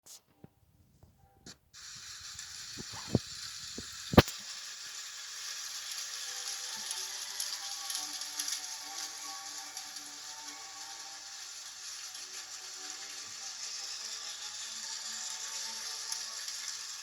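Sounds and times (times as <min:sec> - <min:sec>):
toy train whirring: 0:01.8 - 0:17.0.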